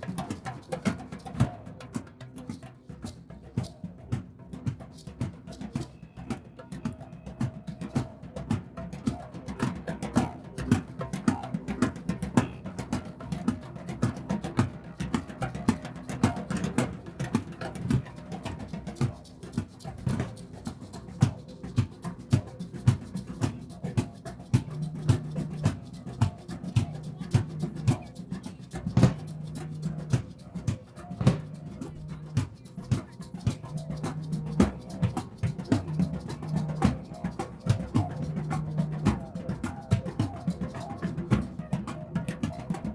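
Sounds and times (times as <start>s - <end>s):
drums playing fast rhythm: 3.2s - 41.6s.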